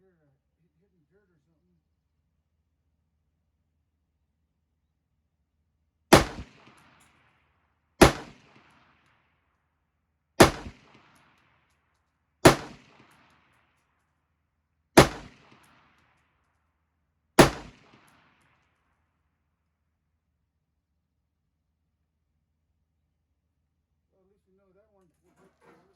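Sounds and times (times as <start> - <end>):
rifle shots with echo: 6.1 - 7.3, 8.0 - 9.1, 10.4 - 11.4, 12.4 - 13.6, 15.0 - 16.1, 17.4 - 18.5.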